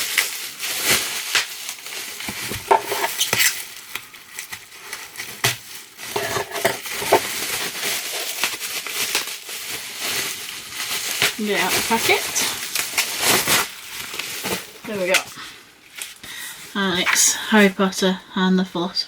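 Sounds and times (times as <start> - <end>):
plastic packaging crinkling: 0.0 - 17.7.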